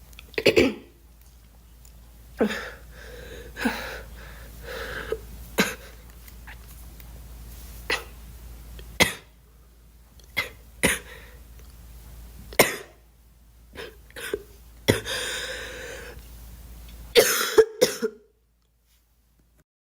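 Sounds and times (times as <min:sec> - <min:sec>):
girl coughing: 0:00.4 - 0:00.9, 0:05.6 - 0:05.9, 0:07.9 - 0:08.1, 0:09.0 - 0:09.3, 0:10.4 - 0:11.1, 0:12.6 - 0:13.0, 0:13.8 - 0:15.2, 0:17.2 - 0:18.3.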